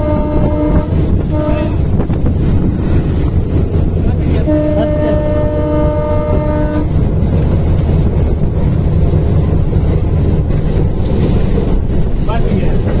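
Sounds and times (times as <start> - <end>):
train horn: 0.0 - 2.2, 4.2 - 7.0
train rumbling: 0.0 - 13.0.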